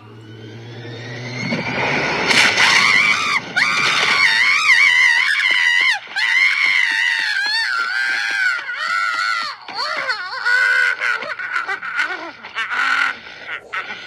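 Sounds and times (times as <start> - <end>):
cartoon voice screaming: 2.6 - 13.0.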